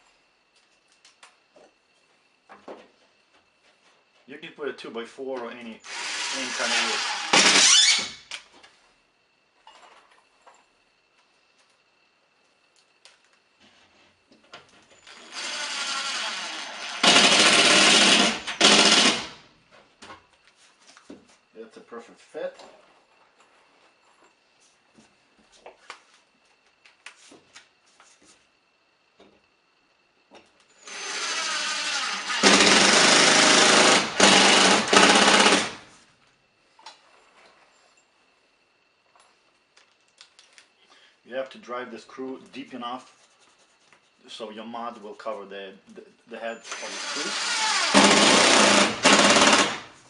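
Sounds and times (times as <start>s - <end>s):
power drill driving a screw: 5.8s - 8.2s, 15.0s - 19.4s, 30.8s - 35.8s, 46.7s - 49.8s.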